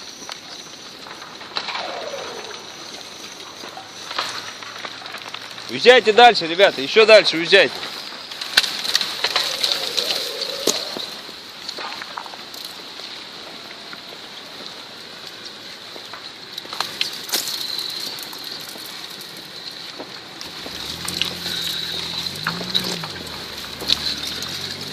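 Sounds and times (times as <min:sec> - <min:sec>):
earth and rock sliding: 0:00.0 - 0:24.9
tumbling rubble cracks: 0:00.0 - 0:24.9
vehicle engine: 0:08.8 - 0:11.4, 0:20.3 - 0:24.9.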